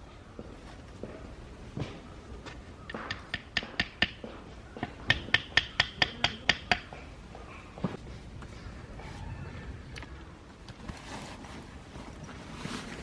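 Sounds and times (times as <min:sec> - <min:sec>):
hammer knocking metal tent stake: 0:02.9 - 0:07.0.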